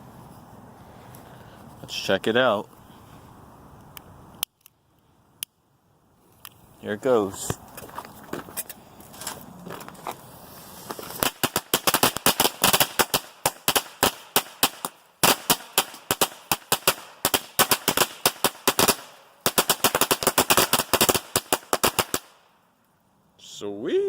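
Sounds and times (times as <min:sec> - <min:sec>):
firecrackers banging: 0:09.6 - 0:22.4.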